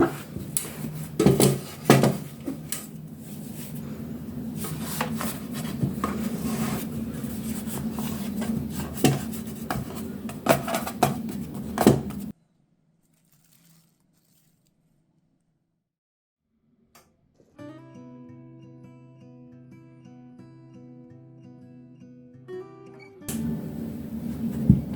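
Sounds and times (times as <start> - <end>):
steady low hum: 0.0 - 12.3, 23.3 - 24.9
utensils and dishes clattering: 4.6 - 12.3.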